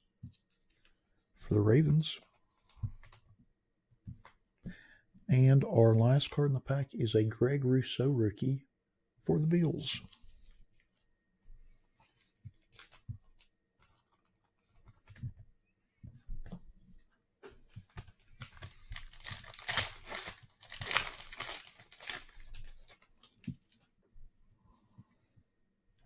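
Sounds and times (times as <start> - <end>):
card pack wrapper tearing: 12.6 - 13.0, 18.4 - 23.4.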